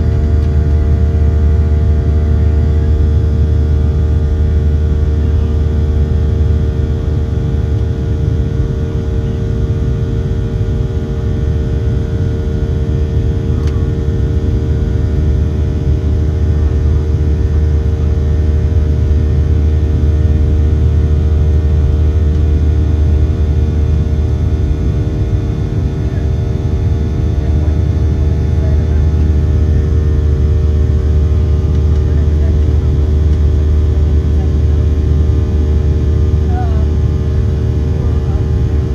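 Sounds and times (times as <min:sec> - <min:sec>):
aircraft engines humming: 0:00.0 - 0:38.9
cabin rumble: 0:13.3 - 0:38.9.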